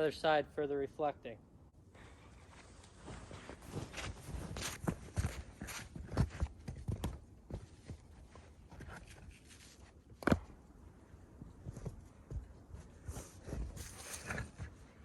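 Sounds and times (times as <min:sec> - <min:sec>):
footsteps in snow: 0:02.2 - 0:06.5.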